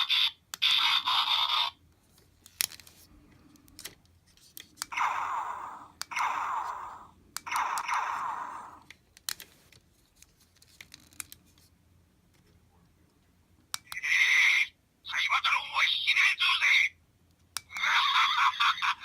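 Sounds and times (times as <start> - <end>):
sharp clicks: 6.0 - 9.4.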